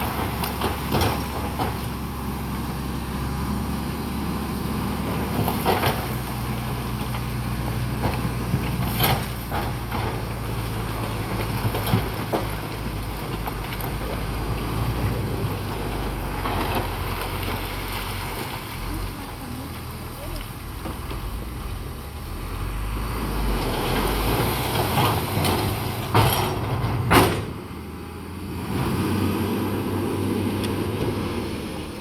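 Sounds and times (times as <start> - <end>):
bulldozer diesel engine running: 0.0 - 32.0
metal knocks and clanks: 24.7 - 27.8.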